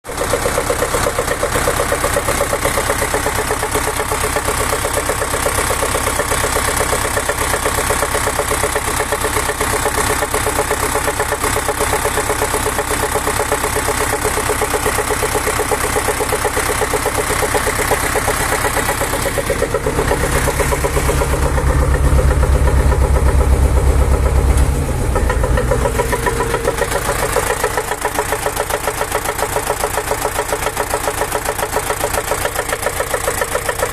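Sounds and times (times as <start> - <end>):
diesel engine idling: 0.1 - 33.9
rapid metallic engine knock: 0.1 - 33.9
deep hum: 19.4 - 27.6.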